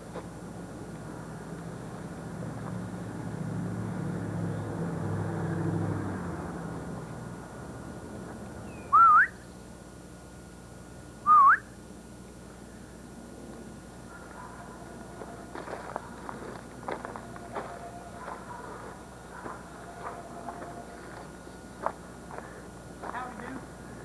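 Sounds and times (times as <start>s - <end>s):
low engine-like hum: 0.0s - 24.0s
loud rising whistles: 8.6s - 9.4s, 11.2s - 11.7s.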